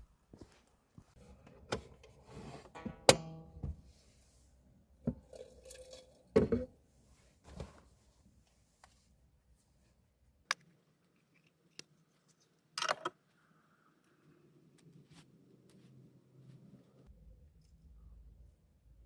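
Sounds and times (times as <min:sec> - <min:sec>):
objects knocking and clattering: 0:05.1 - 0:06.7.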